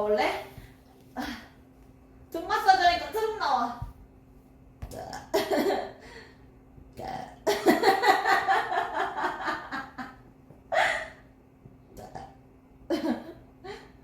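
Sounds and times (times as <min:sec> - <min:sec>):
woman burping: 0:04.8 - 0:05.6, 0:06.9 - 0:07.6, 0:12.0 - 0:12.4.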